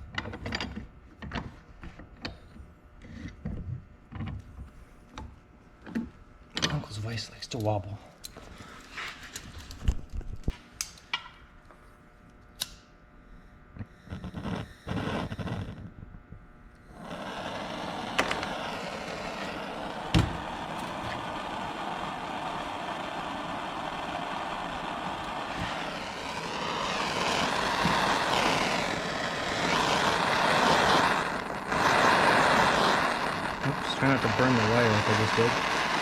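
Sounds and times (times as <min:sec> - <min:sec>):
gas torch flame hissing: 0:13.8 - 0:16.0, 0:16.8 - 0:36.0.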